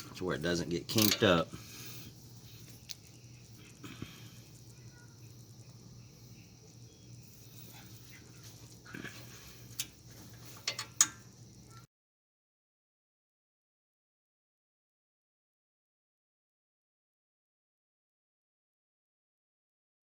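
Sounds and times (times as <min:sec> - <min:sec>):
faint steady hum: 0:00.0 - 0:11.9
hand tools clicking and knocking: 0:00.8 - 0:01.4, 0:10.5 - 0:11.2.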